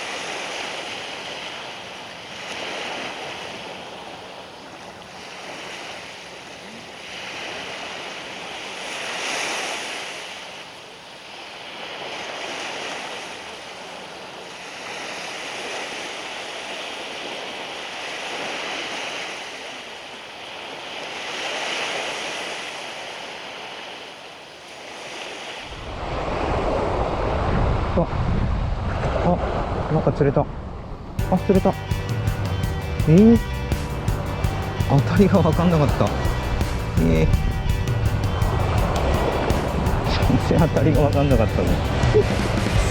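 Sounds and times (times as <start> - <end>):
small waves breaking on beach: 0.0 - 31.2
loud low rumble: 31.2 - 42.9.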